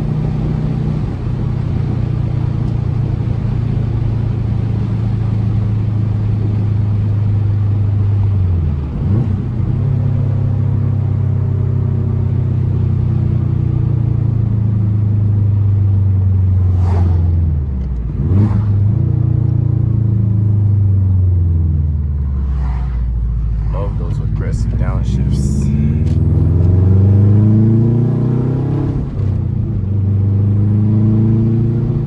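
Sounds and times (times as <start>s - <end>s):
exhaust cracks: 0.0s - 30.1s
car engine rumbling: 0.0s - 32.0s.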